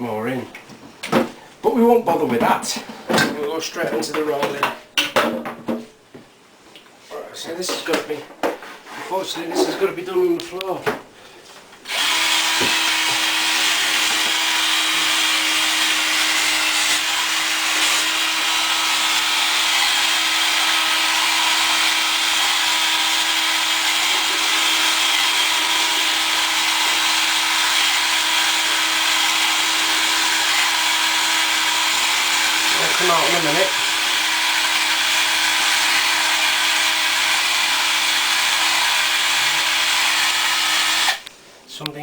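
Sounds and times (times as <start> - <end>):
electric drill motor running: 11.9 - 41.3.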